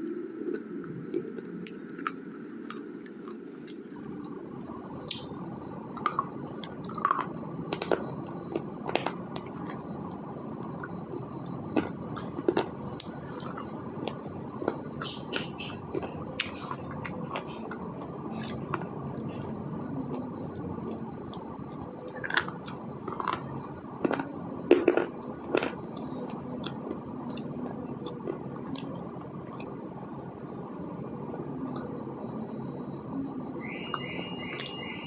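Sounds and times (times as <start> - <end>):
chewing crunches: 5.1 - 9.8, 11.8 - 18.9, 21.7 - 27.4.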